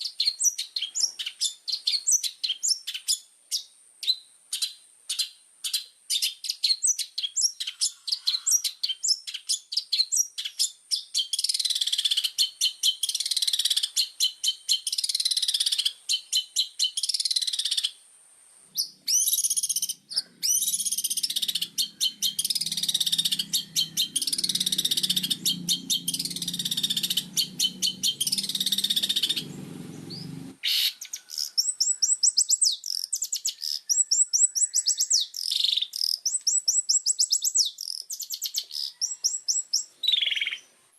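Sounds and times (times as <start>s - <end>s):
bird singing sharp high notes: 18.8s - 37.4s
low buzzing: 20.3s - 30.6s.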